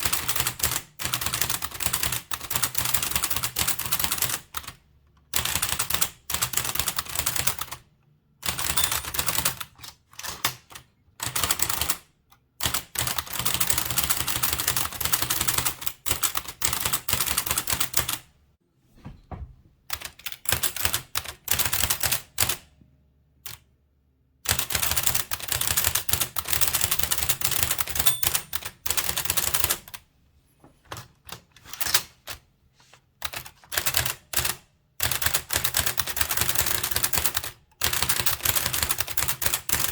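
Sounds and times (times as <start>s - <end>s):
typewriter clattering: 8.4s - 12.0s.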